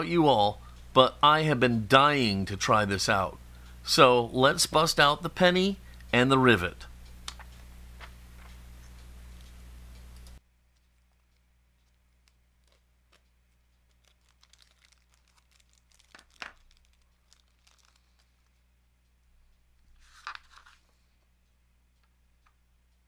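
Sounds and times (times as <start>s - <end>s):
light clicks and taps of small parts: 7.0s - 18.7s.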